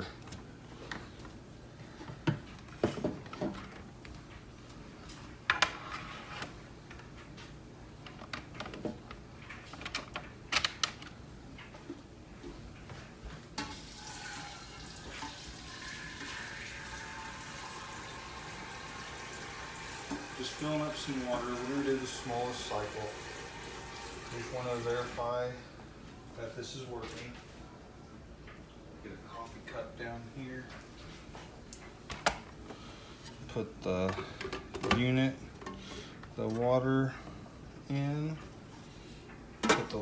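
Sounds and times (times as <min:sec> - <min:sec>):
tap water running: 0:13.6 - 0:25.4.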